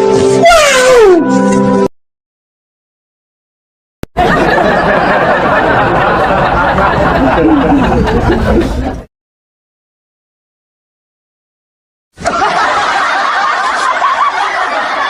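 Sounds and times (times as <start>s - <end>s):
crowd laughing: 4.1s - 9.1s, 12.2s - 15.0s.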